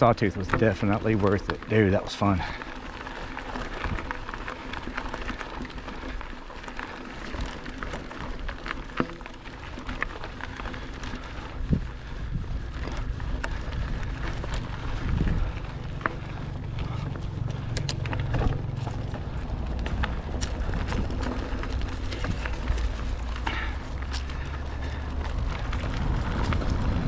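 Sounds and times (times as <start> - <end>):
bike clicks and rattles: 0.0 - 27.0
bike tyres rumbling on dirt: 0.0 - 27.0
wind on microphone: 11.4 - 15.8, 25.1 - 27.0.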